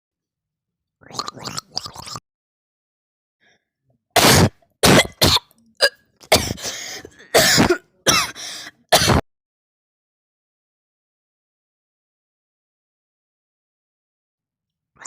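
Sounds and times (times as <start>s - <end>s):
person making cough-like mouth noises: 4.2s - 9.2s.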